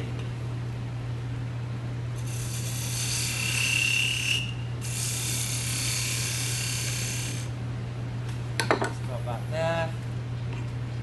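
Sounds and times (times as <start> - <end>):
hissing wood cut on lathe: 2.2 - 7.5
lathe humming: 2.2 - 7.5.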